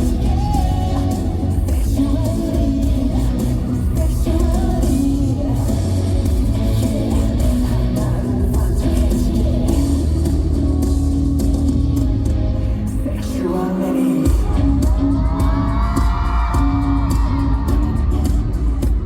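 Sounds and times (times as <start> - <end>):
pop-rock song over sound system: 0.0 - 19.0.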